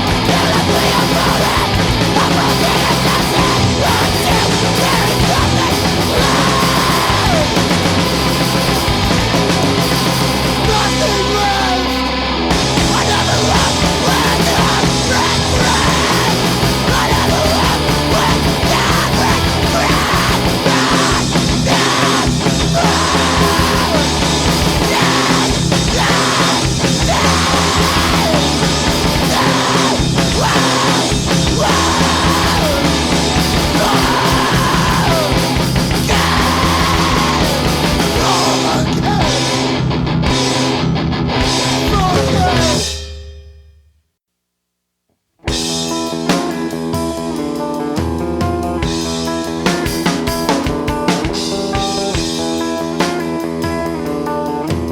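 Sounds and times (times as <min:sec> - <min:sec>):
yelled vocals: 0:00.0 - 0:42.9
heavy rock music: 0:00.0 - 0:43.2, 0:45.5 - 0:54.9.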